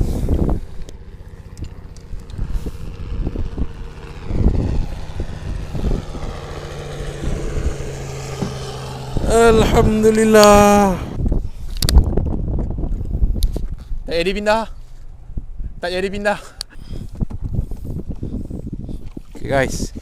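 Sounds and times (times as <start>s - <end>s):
motor droning: 0.0s - 11.3s
wind buffeting microphone: 0.0s - 20.0s.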